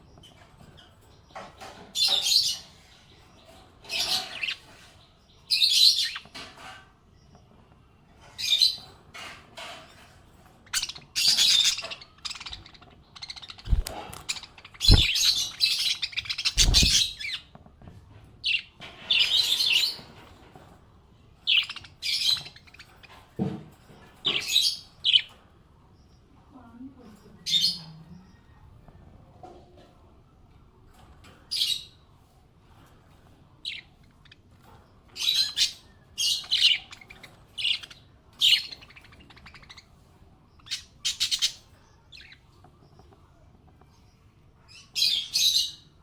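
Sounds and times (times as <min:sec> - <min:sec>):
budgies chirping: 0:00.0 - 0:17.6, 0:18.4 - 0:20.7, 0:21.4 - 0:25.4, 0:33.6 - 0:43.2, 0:43.9 - 0:46.0.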